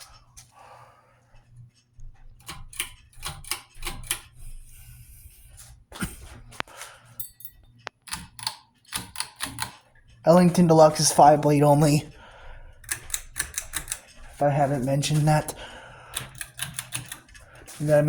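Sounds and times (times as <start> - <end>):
ceiling fans humming: 0.0 - 18.0
sharp clicks and knocks: 12.8 - 14.4, 15.4 - 17.8.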